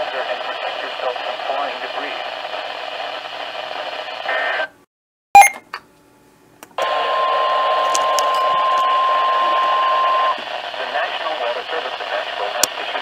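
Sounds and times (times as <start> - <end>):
radio static: 0.0 - 3.0, 9.5 - 13.0
weather radio alert beep: 5.4 - 5.6.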